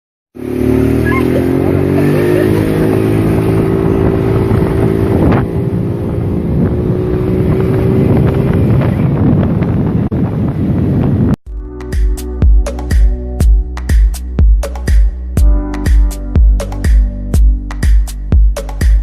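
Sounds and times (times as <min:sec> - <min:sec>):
vehicle engine running: 0:00.4 - 0:10.1
wind buffeting microphone: 0:01.4 - 0:11.4.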